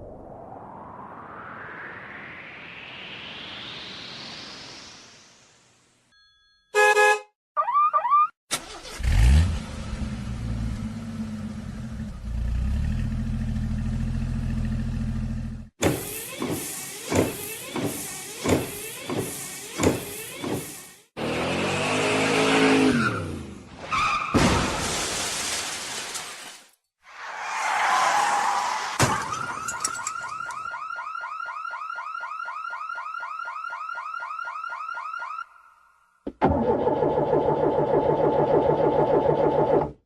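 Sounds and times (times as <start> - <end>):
long falling sweep: 0.0 - 5.6.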